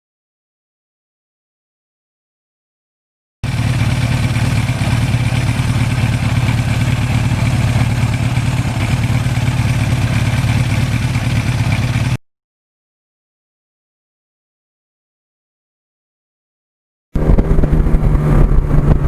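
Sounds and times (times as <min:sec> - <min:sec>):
motorcycle engine running steadily: 0:03.4 - 0:12.2, 0:17.2 - 0:19.0.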